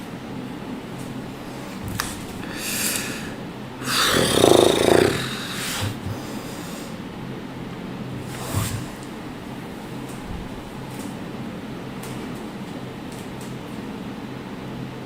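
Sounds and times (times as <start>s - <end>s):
person breathing heavily: 1.4s - 7.1s.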